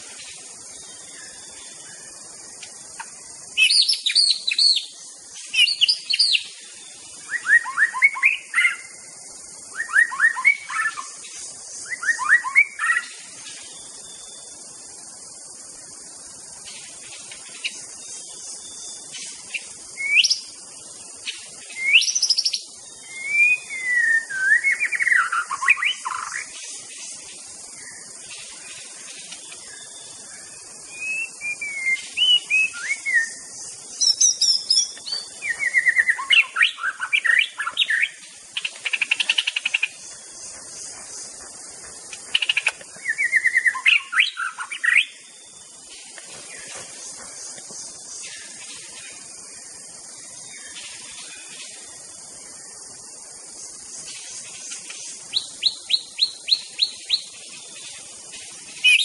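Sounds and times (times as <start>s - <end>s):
steady high hiss: 0.0s - 59.0s
bird singing whistled phrases: 7.2s - 9.0s, 9.7s - 11.1s, 11.8s - 13.1s, 20.0s - 20.5s, 21.8s - 26.4s, 30.9s - 33.4s, 34.0s - 38.2s, 43.0s - 45.2s.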